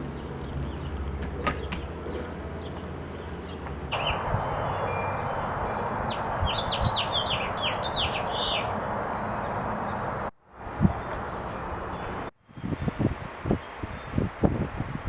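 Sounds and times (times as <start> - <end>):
rushing outdoor background noise: 0.0 - 12.3
small bird chirping: 3.9 - 10.3.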